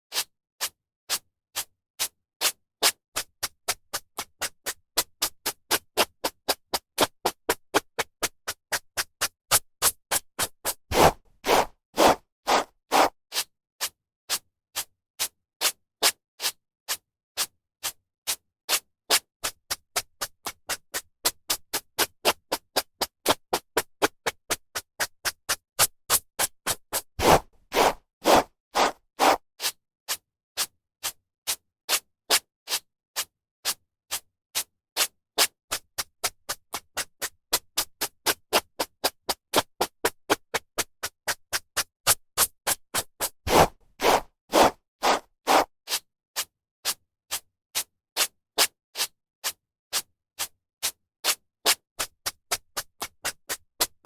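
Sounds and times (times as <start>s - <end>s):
hairbrush strokes through hair: 10.9s - 13.1s, 27.2s - 29.4s, 43.5s - 45.7s.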